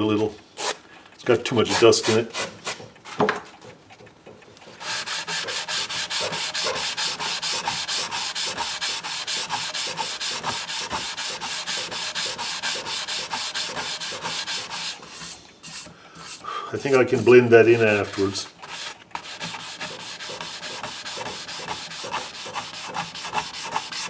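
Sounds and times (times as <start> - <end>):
rapid scrubbing on wood: 4.8 - 24.0.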